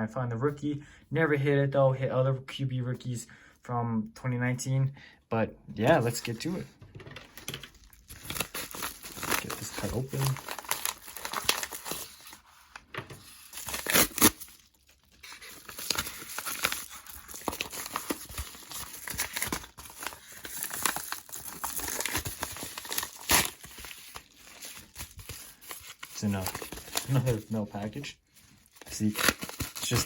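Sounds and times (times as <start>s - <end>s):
package crinkling and rustling: 7.2s - 30.0s
paper ripping: 8.1s - 27.6s, 28.8s - 30.0s.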